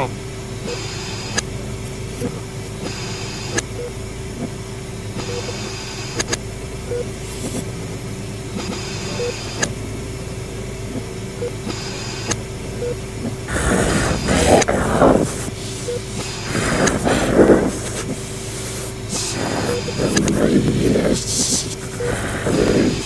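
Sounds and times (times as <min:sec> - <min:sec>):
low mechanical hum: 0:00.0 - 0:23.0
hiss: 0:02.7 - 0:03.6, 0:07.2 - 0:07.7, 0:13.5 - 0:23.0
short blips: 0:12.8 - 0:23.0.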